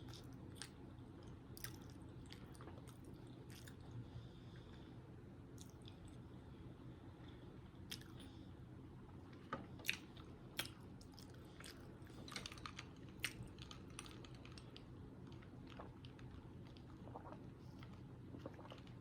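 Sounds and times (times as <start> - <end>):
chewing with mouth clicks: 0.0 - 4.0, 5.6 - 6.2, 7.9 - 8.3, 9.8 - 19.0
low steady hum: 0.0 - 19.0.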